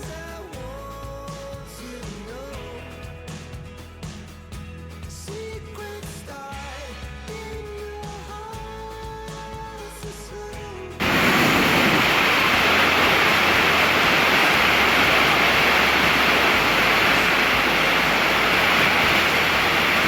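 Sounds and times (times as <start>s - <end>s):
music: 0.0s - 20.0s
loud steady rush of water: 11.0s - 20.0s.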